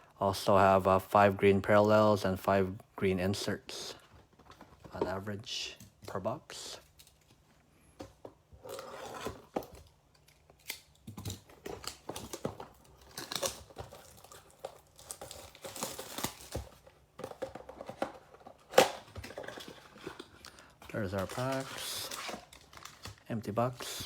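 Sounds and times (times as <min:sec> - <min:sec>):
cardboard box tearing: 0:08.6 - 0:09.9, 0:11.3 - 0:16.8
plastic wrap crinkling: 0:08.6 - 0:24.0.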